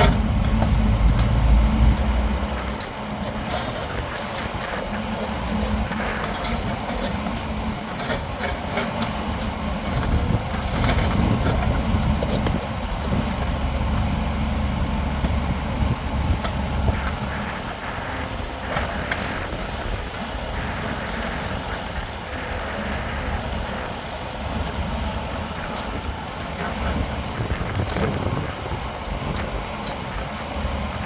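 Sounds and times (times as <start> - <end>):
heavy diesel engine running: 0.0 - 31.0.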